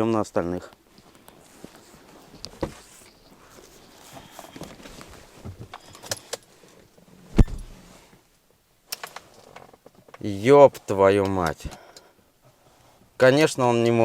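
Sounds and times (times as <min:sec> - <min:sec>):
heavy thump: 0:07.3 - 0:07.9.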